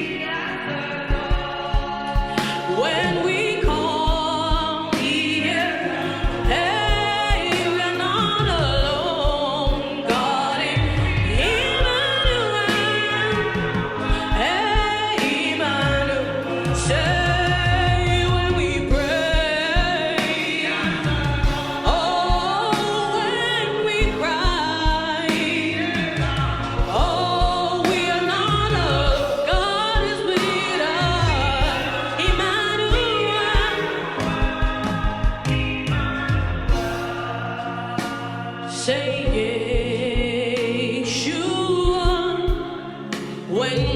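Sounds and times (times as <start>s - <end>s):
band with drum beat and bass: 0.0s - 43.9s
voices singing: 0.0s - 43.9s.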